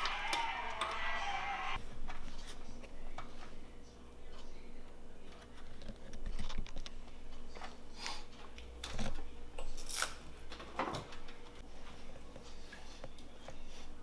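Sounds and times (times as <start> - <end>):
faint steady hum: 0.0 - 1.8.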